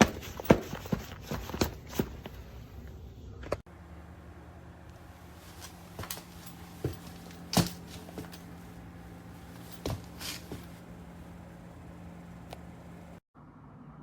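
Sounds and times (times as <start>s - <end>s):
steady low hum: 0.0s - 13.2s.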